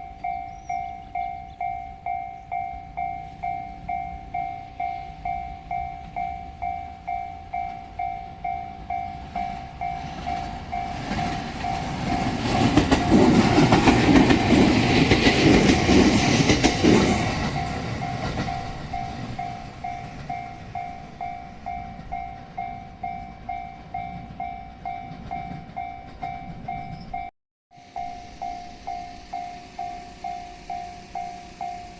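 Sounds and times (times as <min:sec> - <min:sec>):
level crossing alarm dinging: 0:00.0 - 0:14.4, 0:17.2 - 0:31.9
train rumble and wheel clatter: 0:00.0 - 0:31.9.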